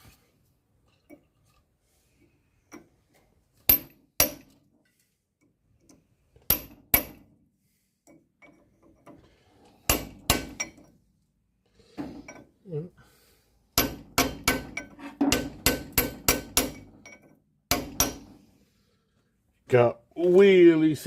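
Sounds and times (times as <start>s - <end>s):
hammer striking chisel on metal: 3.7s - 4.6s, 6.5s - 7.2s, 9.9s - 10.9s, 13.8s - 18.4s.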